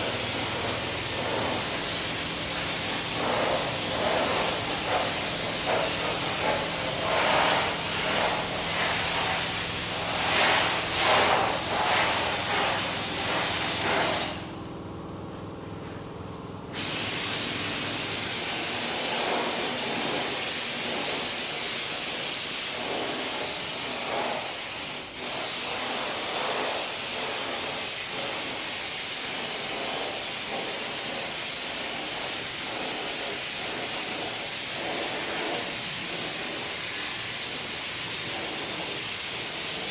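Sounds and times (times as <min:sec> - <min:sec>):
steady spraying hiss: 0:00.0 - 0:14.5, 0:16.7 - 0:39.9
faint machine hum: 0:00.0 - 0:21.6.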